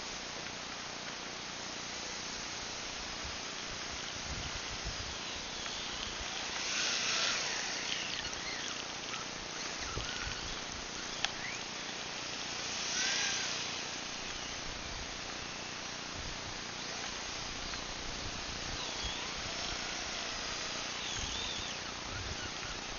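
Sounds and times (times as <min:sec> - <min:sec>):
steady hiss: 0:00.0 - 0:22.9
model jet fan whine passing: 0:01.6 - 0:22.9.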